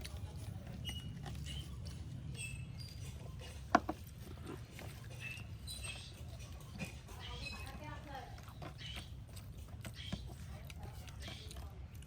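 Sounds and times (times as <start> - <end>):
chewing sounds: 8.4 - 12.0.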